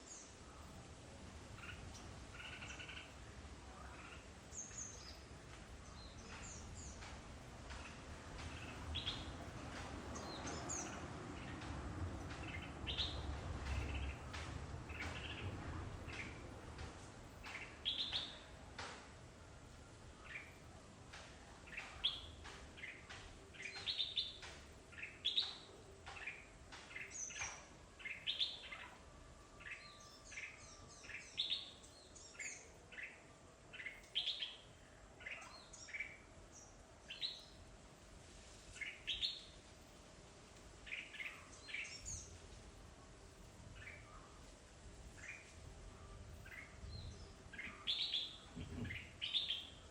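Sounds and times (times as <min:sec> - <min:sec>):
small birds chirping: 0:00.0 - 0:49.9.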